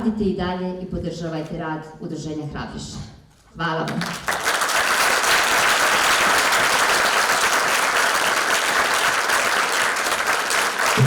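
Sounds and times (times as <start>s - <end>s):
audience applauding: 4.0s - 11.0s.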